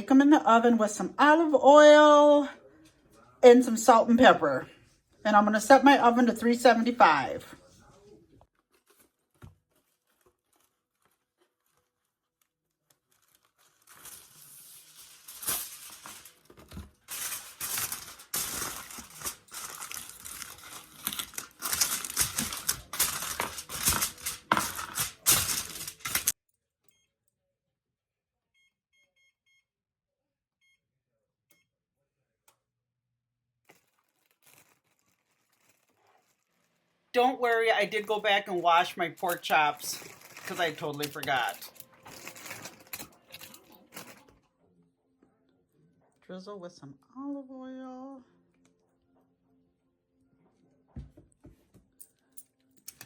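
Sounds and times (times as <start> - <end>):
plastic packaging crinkling and tearing: 8.5 - 26.4, 33.7 - 44.3.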